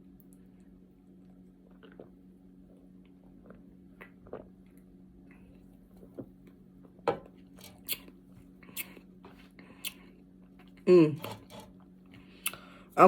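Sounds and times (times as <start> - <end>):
low steady hum: 0.0 - 13.0
person gulping soda: 1.4 - 5.0.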